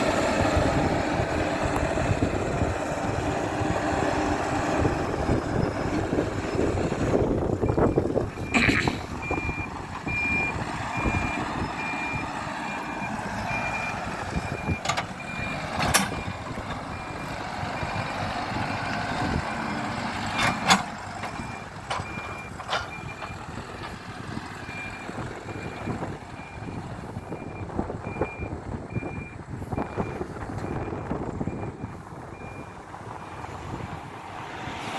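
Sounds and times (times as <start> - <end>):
diesel engine under load: 0.0 - 34.9
reversing alarm beeping: 9.2 - 18.1, 20.6 - 23.5.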